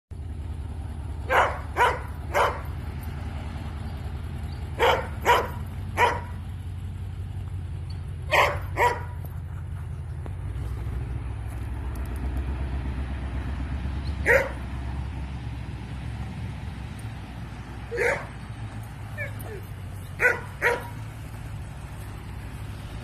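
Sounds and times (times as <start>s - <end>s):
vehicle engine humming: 0.1s - 23.0s
dog barking: 1.3s - 2.7s, 4.8s - 6.4s, 8.3s - 9.2s, 14.2s - 14.6s, 17.9s - 18.4s, 19.2s - 21.0s.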